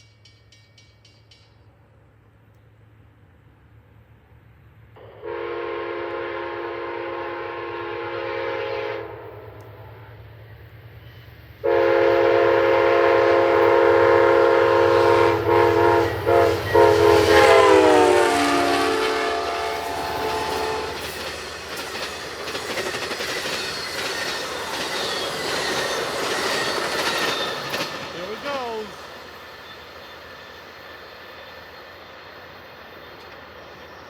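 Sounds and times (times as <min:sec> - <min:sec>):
locomotive air horn chord: 0:05.2 - 0:09.3, 0:11.6 - 0:21.1
passenger cars rumbling by: 0:18.3 - 0:29.6.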